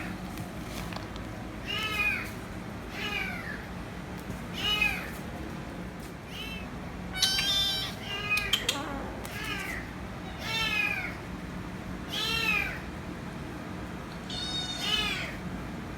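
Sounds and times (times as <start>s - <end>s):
kitten meowing loudly: 7.2s - 8.6s, 9.3s - 11.2s, 14.3s - 15.4s.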